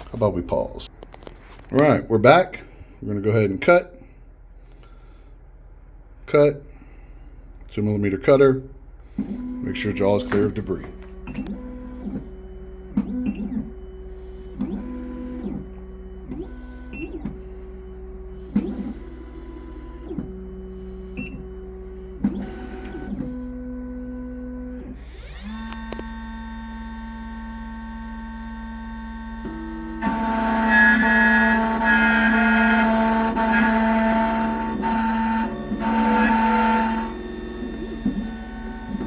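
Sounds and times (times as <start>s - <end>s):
spindle motor whine: 9.0s - 39.0s
stepper motors whirring: 25.0s - 26.8s, 29.0s - 39.0s.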